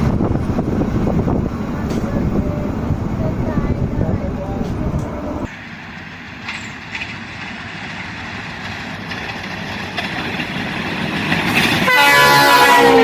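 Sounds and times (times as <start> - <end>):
train running noise: 0.0 - 13.0
locomotive horn blowing: 11.8 - 13.0.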